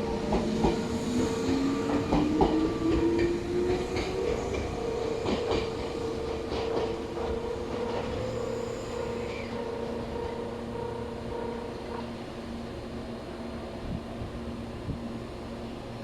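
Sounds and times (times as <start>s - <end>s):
train wheels clacking on rail joints: 0.0s - 8.3s.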